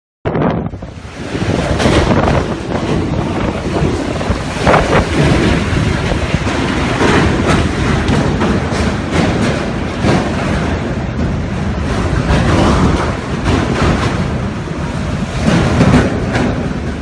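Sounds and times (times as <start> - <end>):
strong wind buffeting microphone: 0.3 - 17.0.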